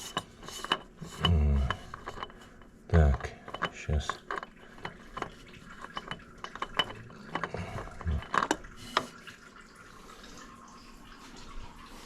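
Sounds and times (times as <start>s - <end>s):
metal tools clinking: 0.0s - 9.2s.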